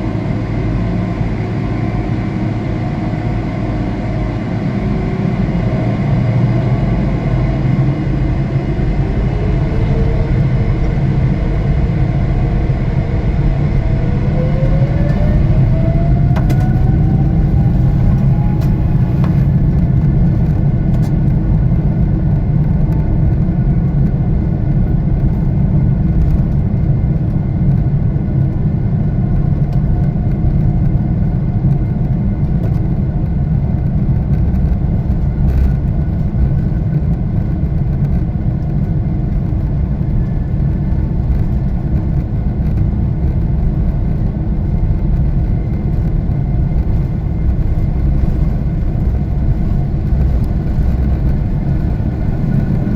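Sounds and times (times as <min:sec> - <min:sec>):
jet engines rumbling in cabin: 0:00.0 - 0:52.9
faint whining tones: 0:08.8 - 0:21.3.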